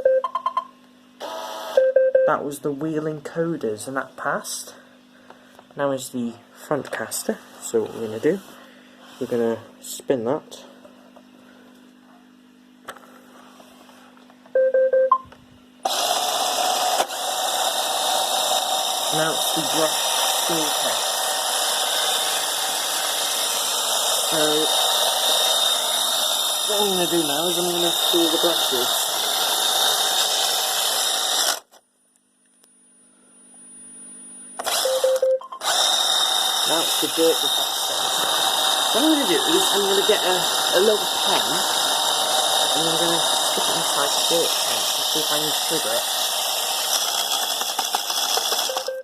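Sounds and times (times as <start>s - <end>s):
electronic beeps: 0.0s - 0.7s, 34.8s - 35.6s
brush motor whirring: 1.2s - 1.8s, 15.8s - 31.8s, 34.6s - 49.0s
faint high whine: 31.7s - 35.6s.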